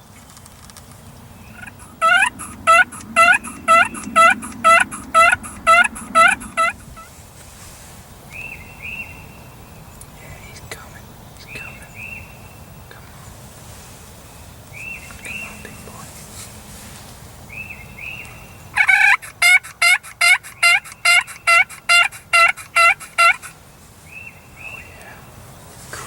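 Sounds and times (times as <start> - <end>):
wild turkey yelping: 1.5 - 7.1, 17.6 - 23.6.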